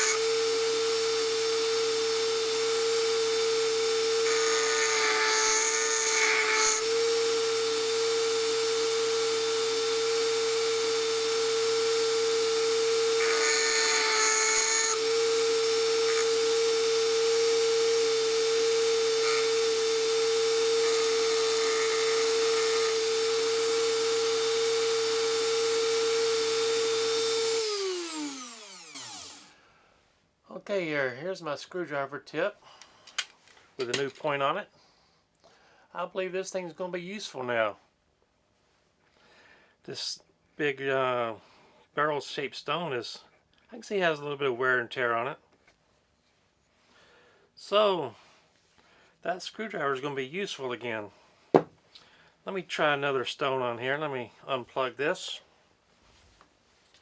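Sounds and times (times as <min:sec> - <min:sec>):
grinding stone rasping on metal: 0:00.0 - 0:23.3
rotary tool whining: 0:00.0 - 0:29.5.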